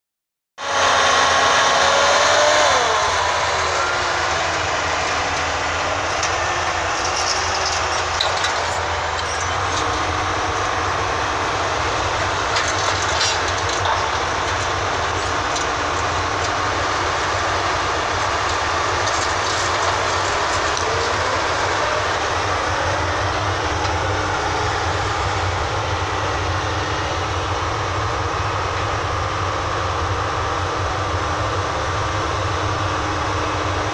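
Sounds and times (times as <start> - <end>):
excavator engine running: 0.6 - 33.9.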